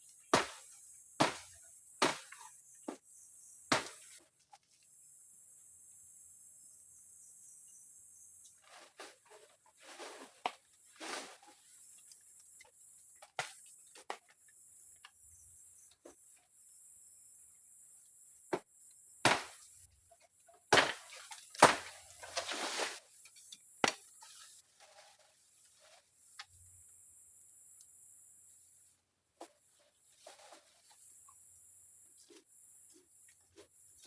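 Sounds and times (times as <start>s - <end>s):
rustling and scraping: 8.4s - 14.4s, 21.0s - 26.6s, 29.4s - 31.4s.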